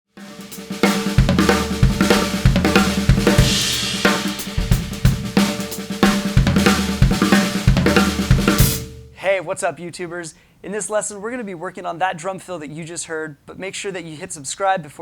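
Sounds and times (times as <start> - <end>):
drum roll fill: 0.1 - 9.2
drum kit groove: 0.1 - 9.3
cymbal crash: 0.3 - 9.2.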